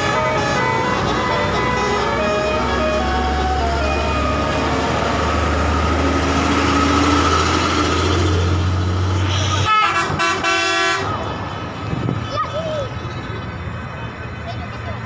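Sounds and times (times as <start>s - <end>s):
bus horn blasts: 0.0s - 4.8s, 9.6s - 11.2s
bus engine drone: 0.0s - 15.0s.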